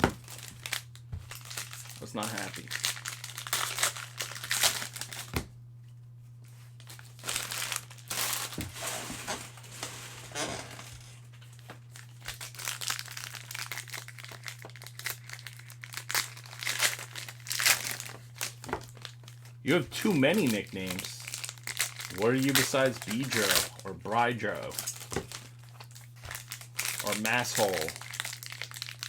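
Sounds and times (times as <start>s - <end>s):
cellophane wrappers tearing and crinkling: 0.0s - 5.4s, 6.6s - 29.0s
steady low hum: 13.9s - 28.4s.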